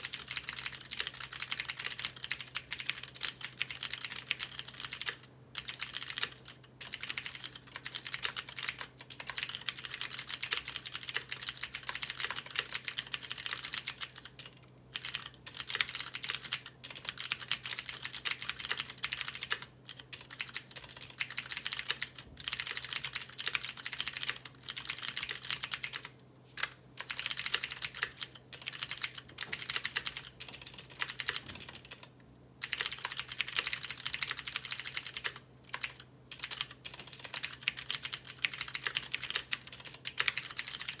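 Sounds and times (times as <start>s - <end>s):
clicky mechanical keyboard typing: 0.0s - 41.0s.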